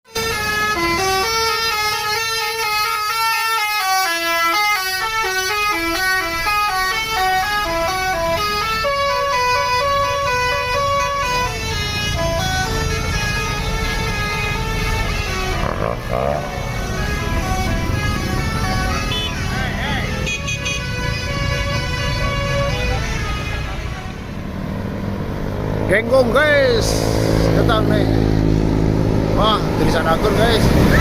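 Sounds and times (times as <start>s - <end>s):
musical bus horn playing tune: 0.1s - 24.4s.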